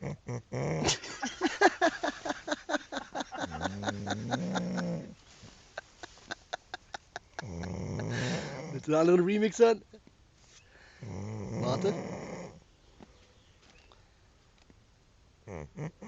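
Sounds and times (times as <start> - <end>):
person snoring: 3.4 - 5.1, 7.4 - 8.8, 11.0 - 12.6.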